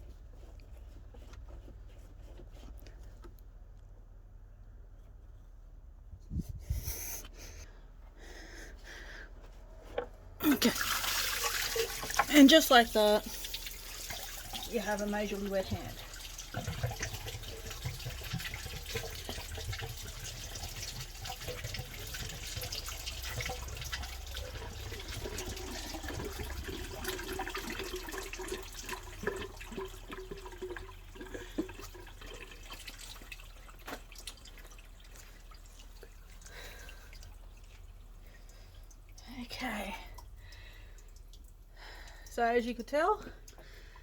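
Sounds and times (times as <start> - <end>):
liquid pouring from hose: 10.4 - 42.4.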